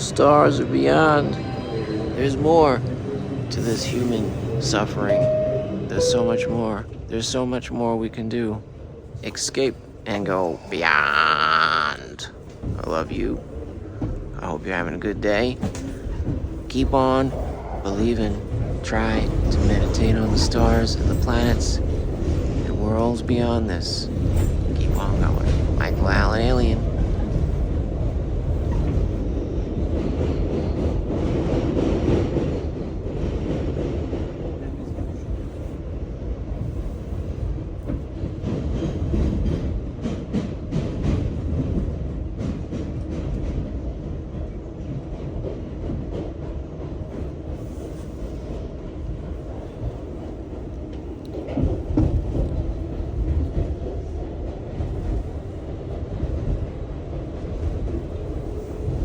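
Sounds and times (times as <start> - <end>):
subway train rumbling on rails: 0.0 - 59.0
train clattering: 0.0 - 59.0.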